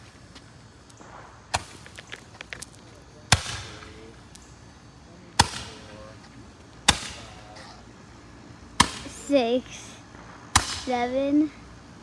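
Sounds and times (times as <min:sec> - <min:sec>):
firework crackles: 0:00.0 - 0:08.1
firework bangs with echo: 0:03.3 - 0:04.4, 0:05.4 - 0:06.2, 0:06.8 - 0:07.6, 0:08.8 - 0:09.3, 0:10.2 - 0:11.1.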